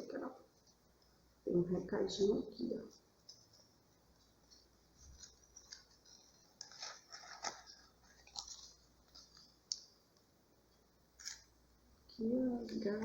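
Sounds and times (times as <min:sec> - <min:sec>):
paper crackling and rustling: 0:05.0 - 0:09.8.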